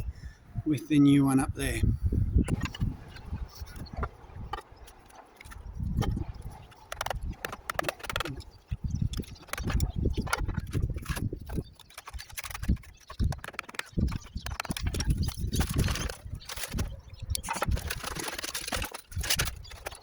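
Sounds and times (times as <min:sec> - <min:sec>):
roof tiles knocking and clinking: 0:03.6 - 0:20.0.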